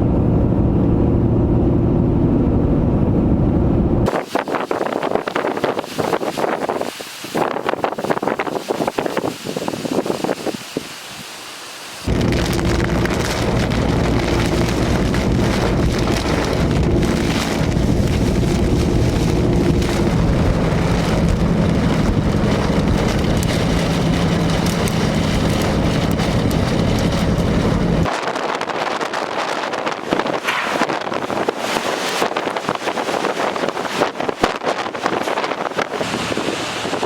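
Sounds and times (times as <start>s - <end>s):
steady low hum: 0.0s - 4.1s, 12.1s - 28.1s
wind noise on microphone: 0.0s - 11.4s, 12.0s - 37.0s
wind: 0.0s - 37.0s
rain: 4.1s - 37.0s.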